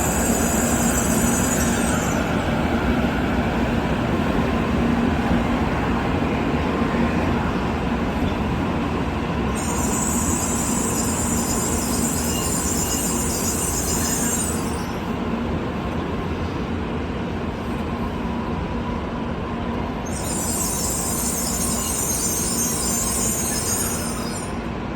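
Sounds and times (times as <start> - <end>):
high hissing squeal: 0.0 - 2.4, 9.6 - 15.1, 20.0 - 24.7
train rumbling into platform: 0.0 - 24.9.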